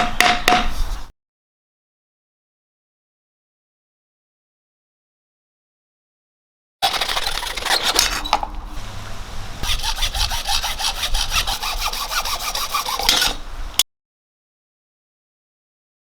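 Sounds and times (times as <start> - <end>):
saw cutting pipe: 6.8 - 13.8.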